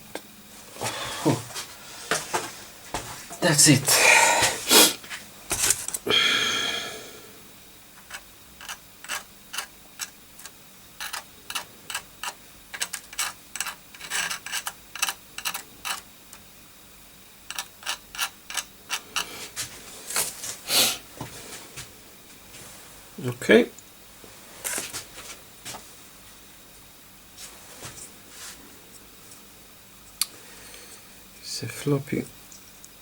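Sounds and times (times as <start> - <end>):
small hard parts clicking: 8.0 - 16.5, 17.5 - 19.6.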